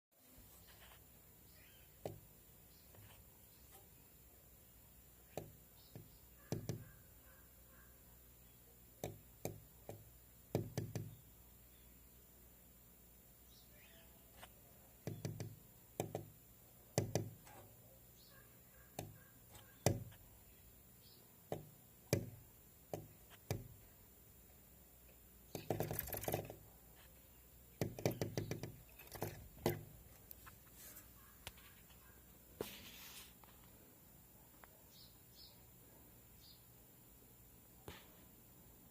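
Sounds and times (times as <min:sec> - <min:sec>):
bird pecking wood: 0:05.3 - 0:07.0, 0:09.0 - 0:11.2, 0:15.0 - 0:17.6, 0:18.9 - 0:20.2, 0:21.5 - 0:23.9, 0:25.5 - 0:26.6, 0:27.8 - 0:30.5.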